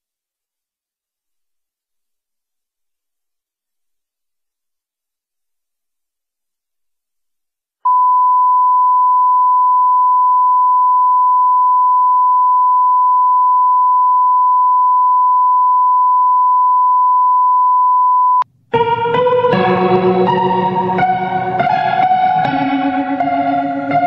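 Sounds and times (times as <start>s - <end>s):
loud steady electronic beep tone: 7.9s - 18.4s.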